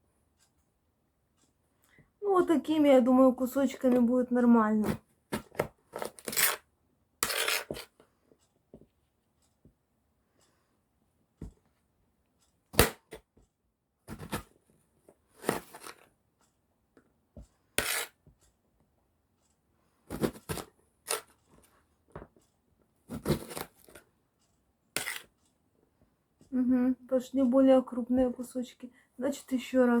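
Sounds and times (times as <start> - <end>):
knife slicing eggplant: 7.2 - 7.9, 17.8 - 18.2, 23.1 - 23.9, 25.0 - 25.3.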